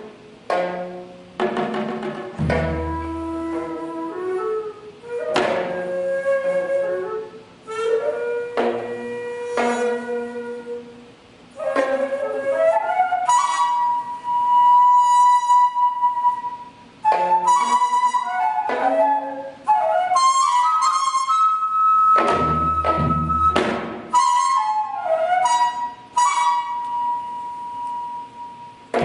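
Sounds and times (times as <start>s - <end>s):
deep struck note: 2.3s - 3.4s
bamboo flute slow melody: 2.3s - 29.0s.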